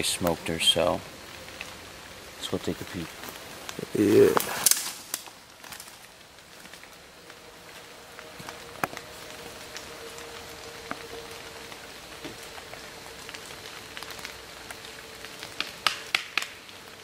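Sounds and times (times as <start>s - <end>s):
water dripping onto leaves: 0.0s - 17.0s
loud sharp cracks: 4.2s - 5.9s, 15.4s - 16.8s.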